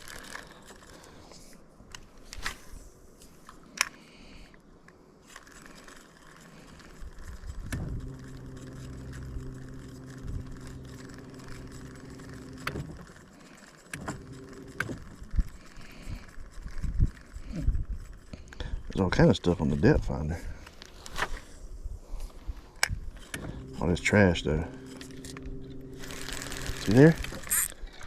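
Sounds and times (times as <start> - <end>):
electric trolling motor humming: 6.4 - 17.4, 23.1 - 28.0
sharp clicks and knocks: 7.6 - 13.2, 13.8 - 15.4, 22.8 - 27.7.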